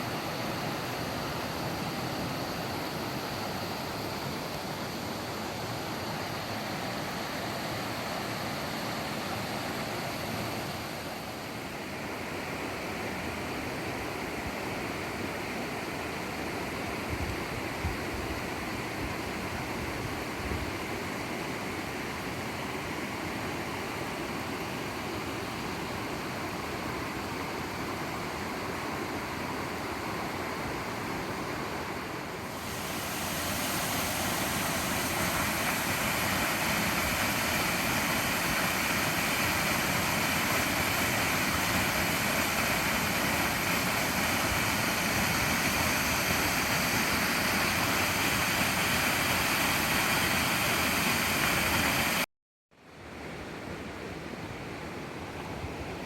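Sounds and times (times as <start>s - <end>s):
waterfall rushing: 32.1s - 52.2s.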